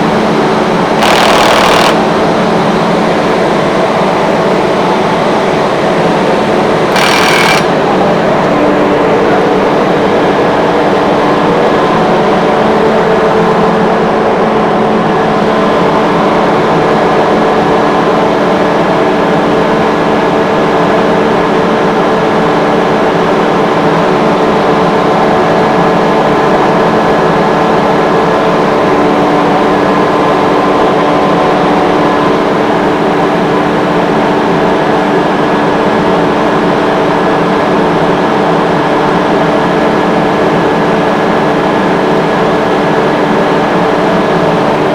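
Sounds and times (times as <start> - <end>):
air compressor running: 0.0 - 44.9.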